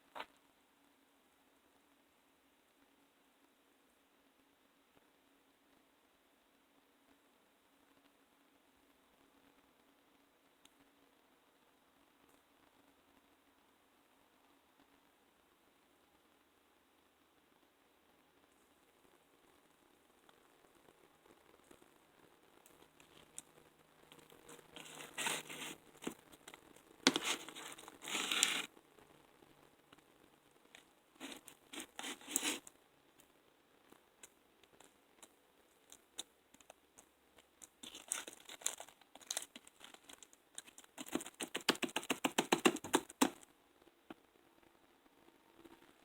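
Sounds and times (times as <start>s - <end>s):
slime tearing and crackling: 31.2s - 32.6s, 37.8s - 42.0s.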